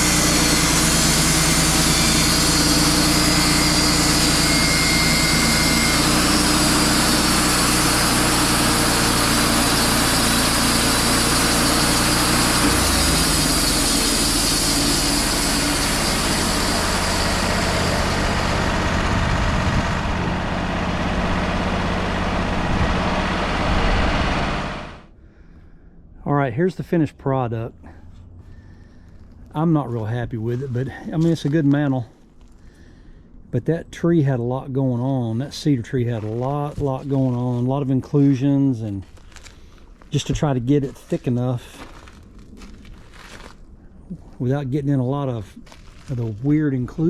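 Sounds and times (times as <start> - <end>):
band blade cutting log: 0.0 - 18.5
sawmill engine running: 0.0 - 25.2, 26.3 - 33.1, 33.8 - 47.0.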